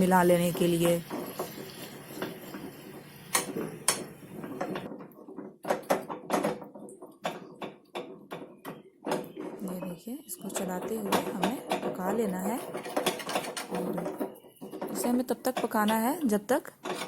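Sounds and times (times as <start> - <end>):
faint sizzle: 0.0 - 4.8
spoon scraping and knocking a pan: 0.0 - 9.8, 10.4 - 17.0.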